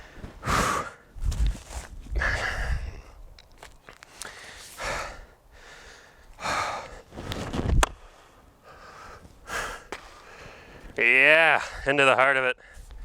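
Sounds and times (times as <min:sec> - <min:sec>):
heavy gasping breaths: 0:02.2 - 0:03.2, 0:04.1 - 0:07.1, 0:08.0 - 0:10.9.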